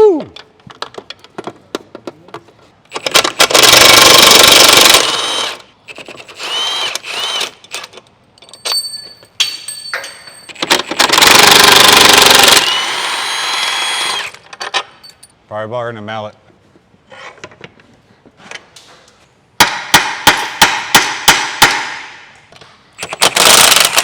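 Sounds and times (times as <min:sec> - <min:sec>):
impact wrench hammering on bolts: 0:19.6 - 0:22.4.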